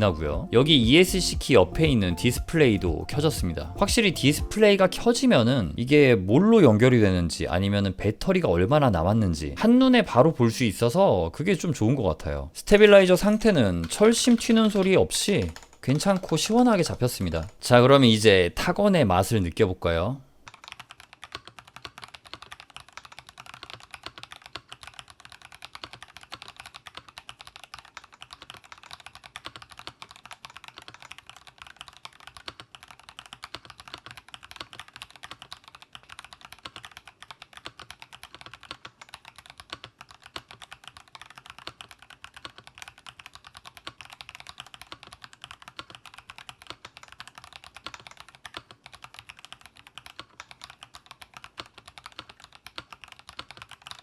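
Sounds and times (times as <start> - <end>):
fast typing on mechanical keyboard: 12.8 - 18.8, 20.5 - 54.0.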